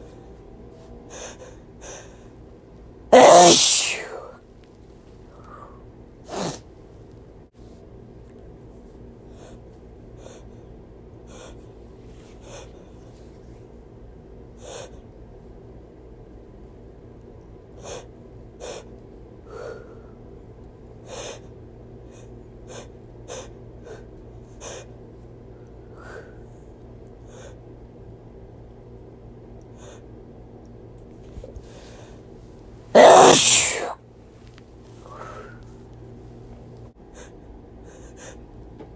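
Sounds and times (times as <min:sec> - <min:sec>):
steady low hum: 0:00.0 - 0:38.9
person gasping and sniffing: 0:03.1 - 0:04.3, 0:33.0 - 0:34.0.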